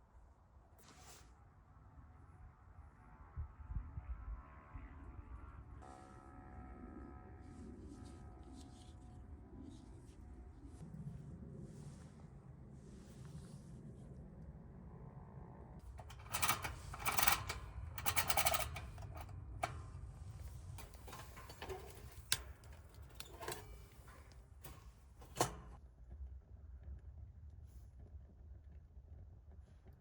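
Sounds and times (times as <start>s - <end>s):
fast rasping clicks: 15.9s - 25.8s.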